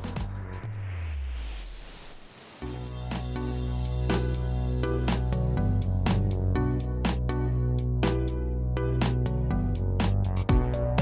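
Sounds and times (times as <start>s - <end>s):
low bass notes: 2.6s - 11.0s.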